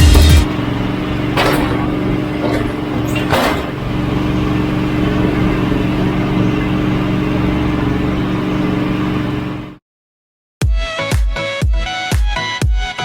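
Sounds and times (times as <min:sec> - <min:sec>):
sawmill engine running: 0:00.0 - 0:09.8.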